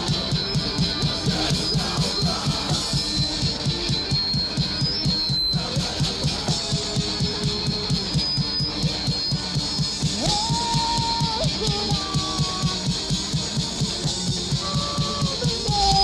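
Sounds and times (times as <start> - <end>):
electric guitar bending: 0.0 - 16.0
fast rock drum beat: 0.0 - 16.0.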